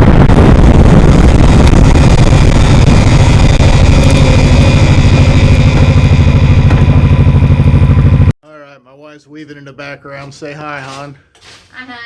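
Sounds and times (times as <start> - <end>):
motorcycle engine running: 0.0 - 8.4.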